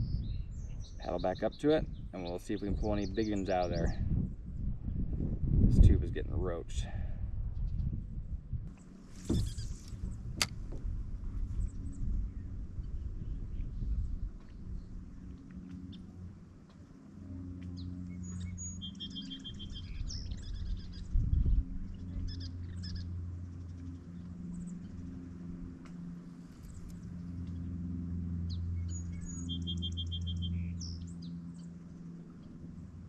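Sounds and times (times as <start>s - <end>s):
low rumble: 0.0s - 1.0s, 1.8s - 29.7s
songbird singing: 0.0s - 4.0s, 8.8s - 10.0s, 17.4s - 32.7s.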